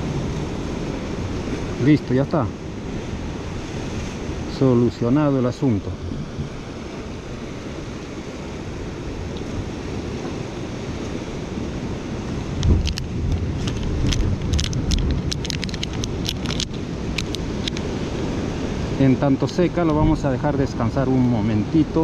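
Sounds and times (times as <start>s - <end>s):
wind buffeting microphone: 0.0s - 20.9s
surf: 0.0s - 22.0s
small sharp clicks and taps: 12.7s - 17.8s.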